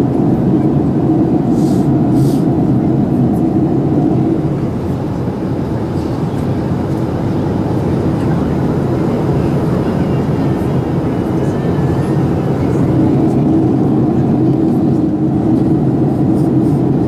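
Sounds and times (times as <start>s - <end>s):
jet engines rumbling: 0.0s - 17.0s
rushing airflow: 0.0s - 17.0s.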